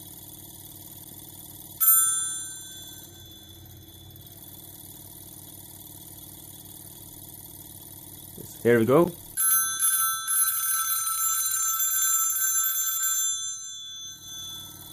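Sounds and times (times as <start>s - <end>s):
ringing generator buzz: 0.0s - 14.9s
telephone bell ding: 1.8s - 4.0s, 9.4s - 14.9s.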